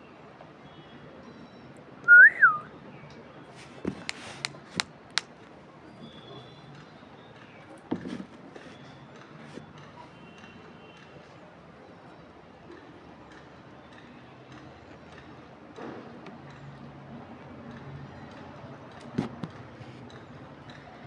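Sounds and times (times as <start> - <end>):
whistle sliding in pitch: 2.1 - 2.7.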